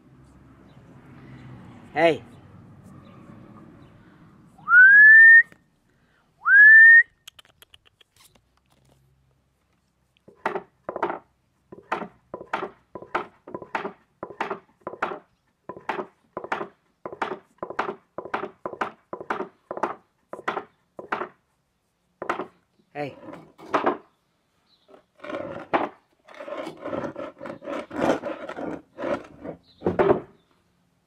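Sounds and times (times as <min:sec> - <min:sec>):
rising whistles: 0:04.6 - 0:05.6, 0:06.4 - 0:07.2
short scratchy strokes: 0:25.0 - 0:29.6.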